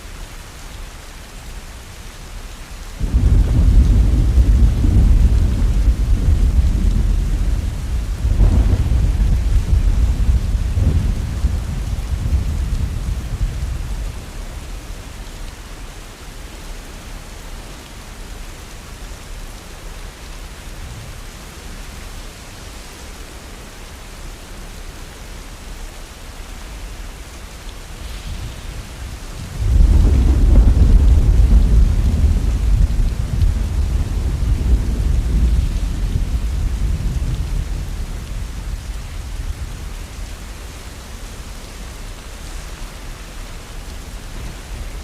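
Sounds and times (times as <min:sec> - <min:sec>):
steady rain: 0:00.0 - 0:45.0
thunder rumbling: 0:03.0 - 0:14.6, 0:28.0 - 0:40.3.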